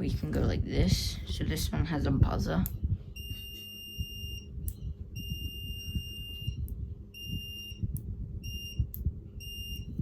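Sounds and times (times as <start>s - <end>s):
multimeter continuity beep: 3.1s - 10.0s.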